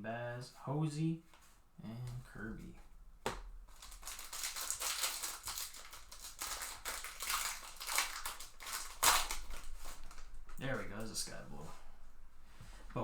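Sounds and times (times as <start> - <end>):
cards being shuffled: 3.2 - 11.1
foil wrapper crinkling: 3.6 - 11.2.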